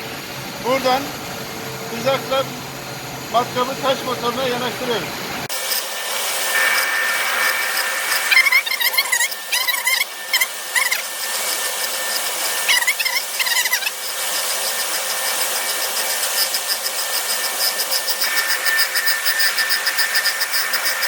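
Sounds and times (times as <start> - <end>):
bench grinder grinding drill bit: 5.5 - 21.0.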